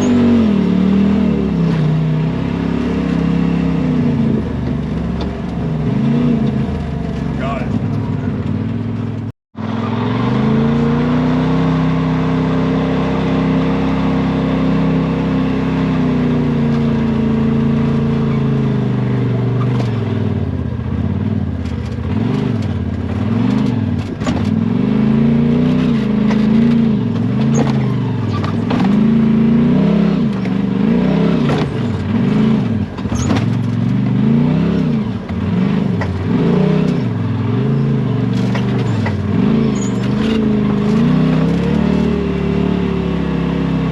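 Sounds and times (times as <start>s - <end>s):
utility vehicle engine revving: 0.0s - 43.9s
knocks and clatter: 21.6s - 24.6s, 26.1s - 29.2s, 31.4s - 34.2s, 35.2s - 37.1s, 38.3s - 41.9s.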